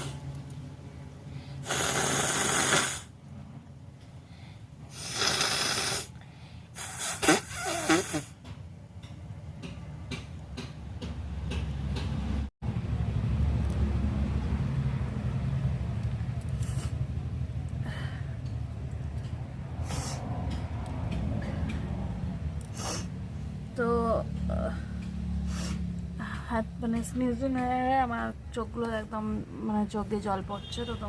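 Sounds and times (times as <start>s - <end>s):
road traffic rumble: 0.0s - 31.0s
woman blowing air through nose: 1.6s - 3.1s, 4.9s - 6.1s, 6.8s - 8.3s.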